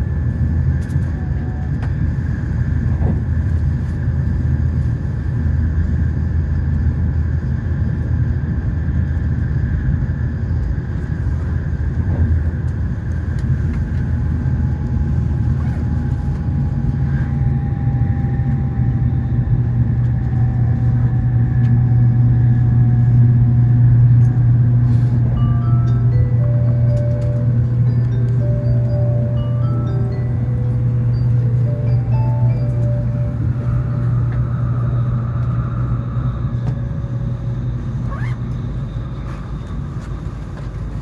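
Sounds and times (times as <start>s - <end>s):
train cabin low rumble: 0.0s - 41.0s
faint falling whine: 13.5s - 41.0s.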